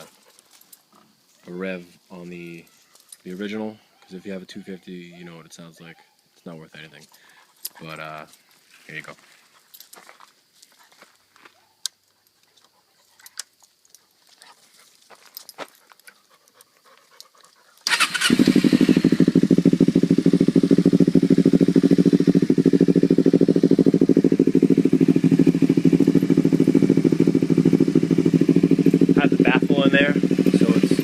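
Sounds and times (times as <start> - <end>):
motorcycle engine starting and idling: 17.9 - 31.0.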